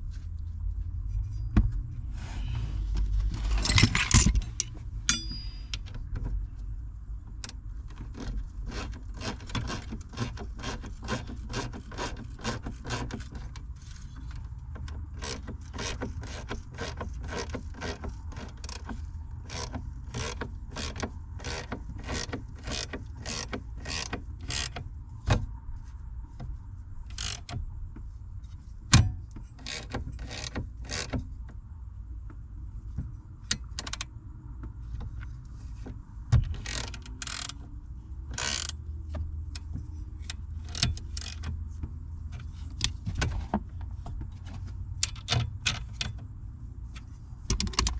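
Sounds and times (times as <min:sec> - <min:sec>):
metal tool knocks: 0:03.6 - 0:05.8
ratchet wrench clicking: 0:36.6 - 0:37.6, 0:38.4 - 0:38.8.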